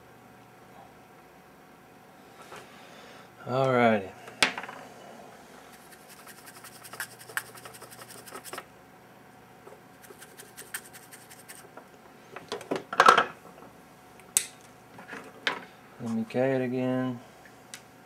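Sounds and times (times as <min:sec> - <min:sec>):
tool scraping solder: 0:05.7 - 0:08.6, 0:10.0 - 0:11.6.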